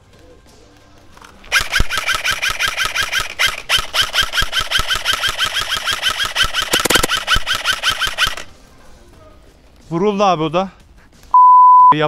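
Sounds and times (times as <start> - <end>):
airsoft rifle firing full auto: 1.5 - 8.5.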